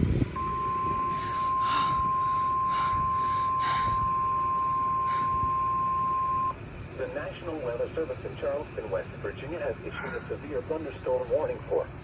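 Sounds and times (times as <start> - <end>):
steady alert tone: 0.4 - 6.5.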